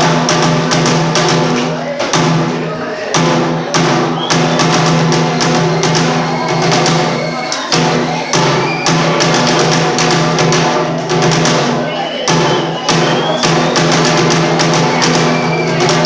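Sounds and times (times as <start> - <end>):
drum struck in quick strokes: 0.0 - 16.0.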